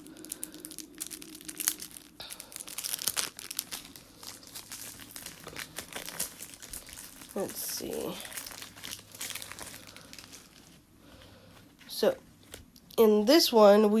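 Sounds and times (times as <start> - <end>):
plastic wrapper crackling: 0.0 - 10.9.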